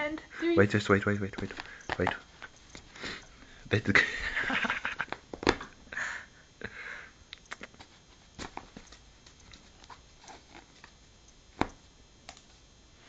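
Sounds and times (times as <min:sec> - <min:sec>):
cat paws tapping and scuffing: 0:07.5 - 0:12.6.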